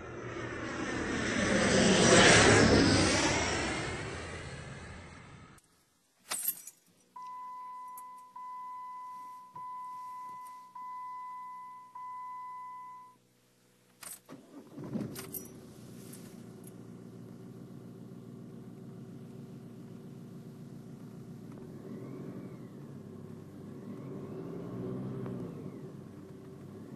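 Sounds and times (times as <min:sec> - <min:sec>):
keys jingling: 0:06.3 - 0:07.2
dashboard warning chime: 0:07.2 - 0:13.2
car engine starting and idling: 0:07.2 - 0:26.9.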